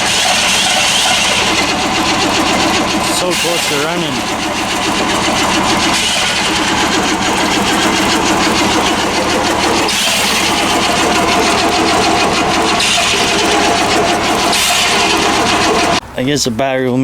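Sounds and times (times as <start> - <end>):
engine turning over and sputtering: 0.0 - 16.6.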